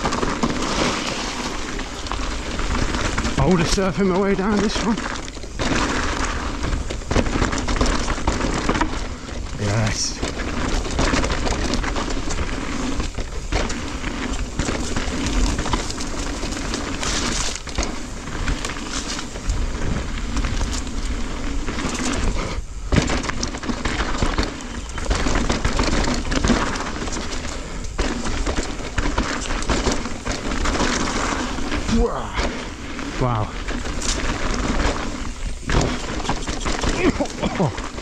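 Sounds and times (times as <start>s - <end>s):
bike frame and chain rattling: 0.0s - 38.0s
tyres knocking against rocks: 33.7s - 38.0s.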